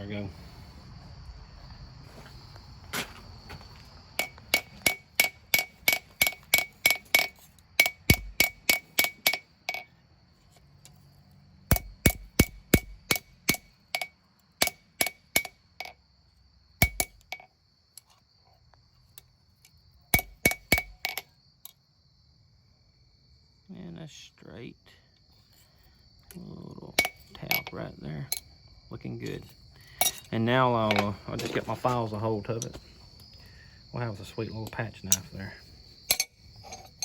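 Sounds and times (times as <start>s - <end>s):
crickets chirping: 0.0s - 37.0s
hammer striking metal blade: 4.2s - 9.8s, 11.7s - 15.6s, 16.8s - 17.4s, 20.2s - 21.2s.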